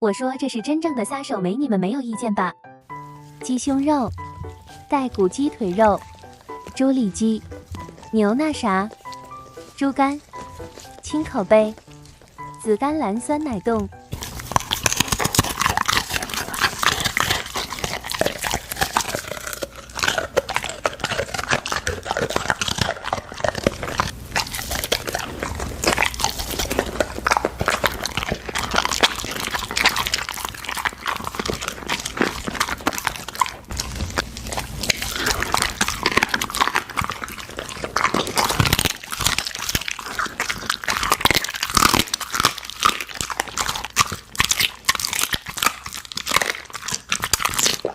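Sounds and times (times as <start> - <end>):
dog chewing and crunching food: 2.9 - 47.9.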